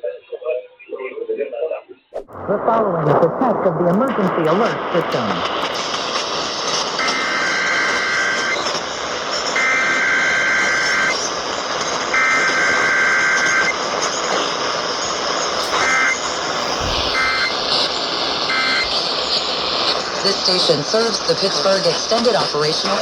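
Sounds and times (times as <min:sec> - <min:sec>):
radio static hiss: 0:02.2 - 0:23.0
buzzy two-tone data bursts: 0:15.6 - 0:17.9.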